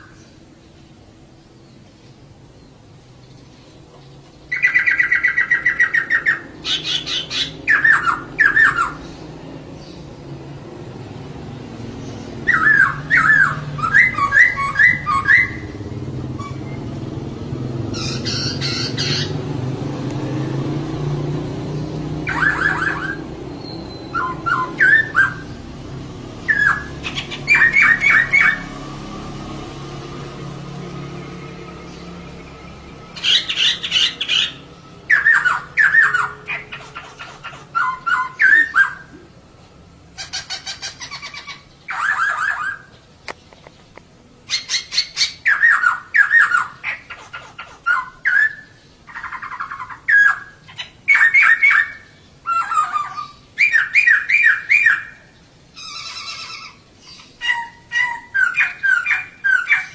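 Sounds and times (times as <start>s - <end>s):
bird chattering calls: 4.0s - 9.3s, 12.1s - 17.0s, 17.8s - 19.5s, 22.2s - 25.6s, 26.4s - 28.7s, 33.1s - 39.3s, 40.2s - 43.9s, 44.5s - 59.9s.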